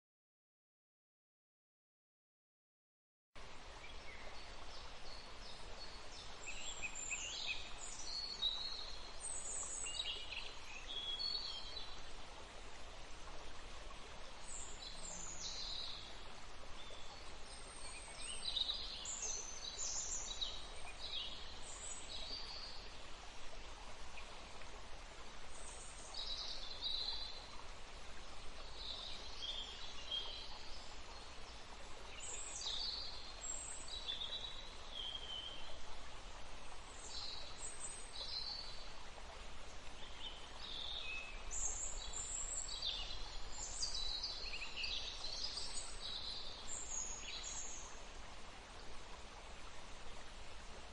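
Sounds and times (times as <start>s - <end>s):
soft background hiss: 3.4s - 50.9s.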